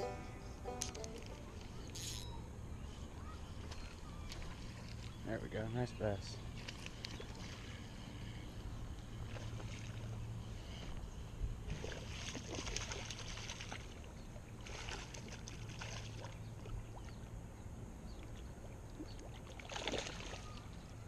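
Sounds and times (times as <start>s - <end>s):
steady low hum: 0.0s - 21.0s
water splashing beside kayak: 11.6s - 17.4s, 18.6s - 20.9s.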